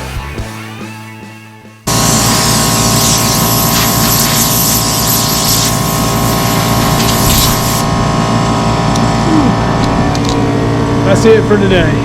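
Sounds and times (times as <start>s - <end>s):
loud hissing grind: 1.9s - 8.0s
motor running: 1.9s - 12.0s.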